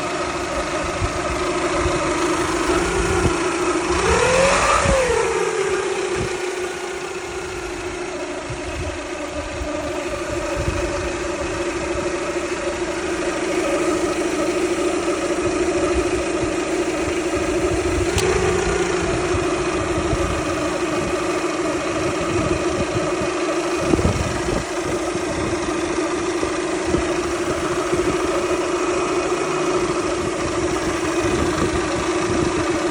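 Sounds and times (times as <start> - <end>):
car engine idling with a whine: 0.0 - 32.9.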